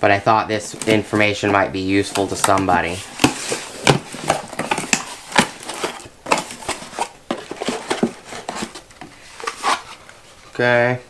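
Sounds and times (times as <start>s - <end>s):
packaging rustling: 0.5s - 10.6s
knocks and taps on boxes: 2.1s - 9.1s.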